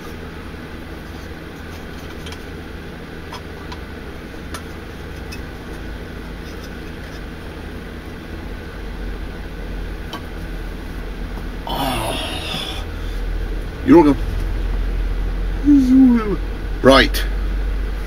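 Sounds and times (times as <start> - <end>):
low background rumble: 3.6 - 18.0.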